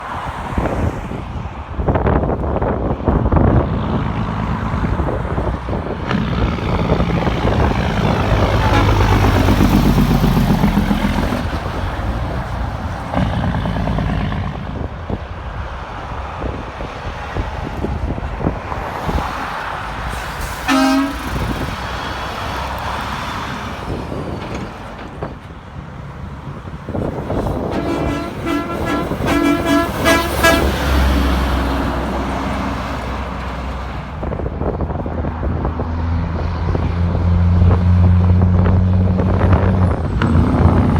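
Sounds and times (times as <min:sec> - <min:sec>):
trucks passing on highway: 0:00.0 - 0:40.9
truck horn toot: 0:06.1 - 0:10.0, 0:20.6 - 0:21.8, 0:27.3 - 0:31.8.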